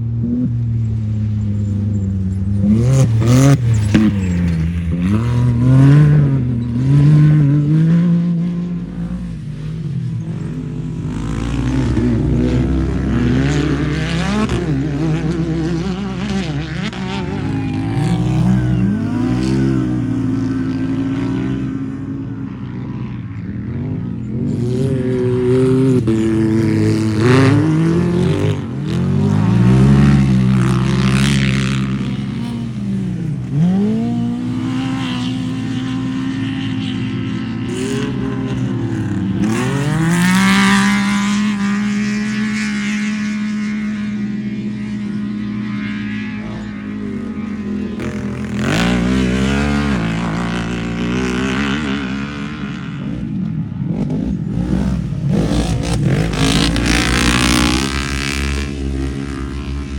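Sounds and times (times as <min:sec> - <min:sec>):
engine revving hard: 0:53.9 - 0:59.9.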